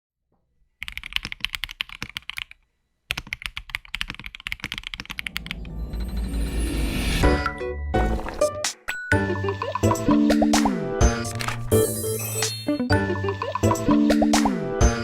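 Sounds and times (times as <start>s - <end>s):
mechanical keyboard typing: 0.8s - 5.7s
background music: 5.2s - 15.0s.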